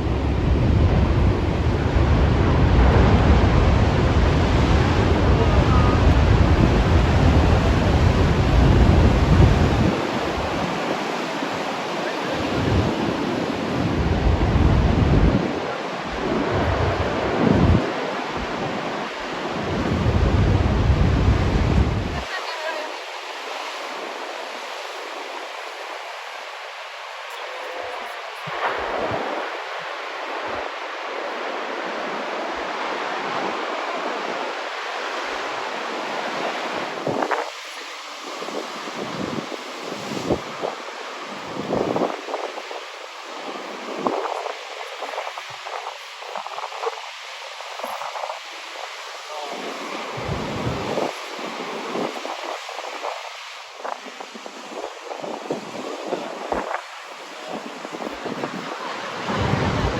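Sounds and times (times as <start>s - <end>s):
ocean waves breaking: 0.0s - 59.9s
wind buffeting microphone: 0.0s - 59.9s.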